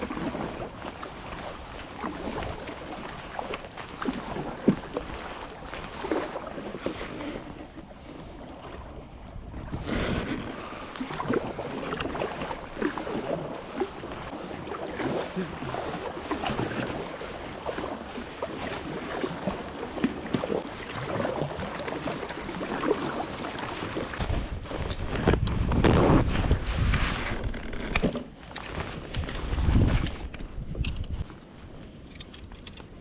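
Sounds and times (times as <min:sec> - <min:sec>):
water lapping against hull: 0:00.0 - 0:32.0
wind buffeting microphone: 0:28.8 - 0:31.3.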